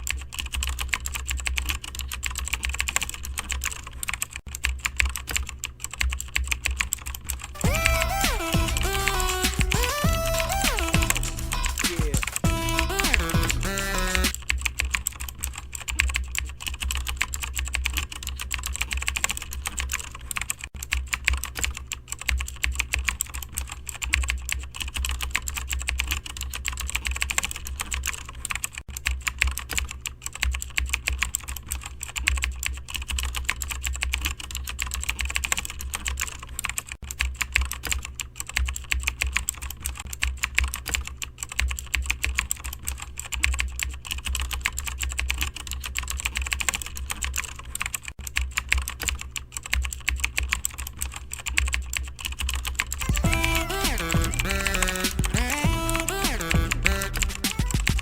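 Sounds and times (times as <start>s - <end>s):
steady low hum: 0.0s - 27.0s, 48.8s - 58.0s
fast typing on keyboard: 0.0s - 58.0s.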